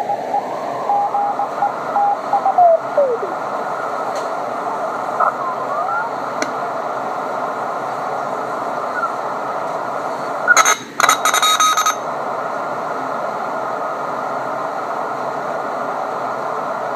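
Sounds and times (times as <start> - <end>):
harsh radio crackle with tones: 0.0 - 12.0
radio static hiss: 0.0 - 16.9.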